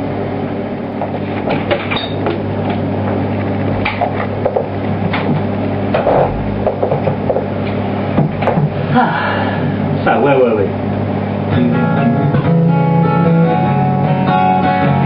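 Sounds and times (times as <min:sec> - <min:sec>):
microwave oven humming: 0:00.0 - 0:15.0
knocks and clicks: 0:03.8 - 0:07.5.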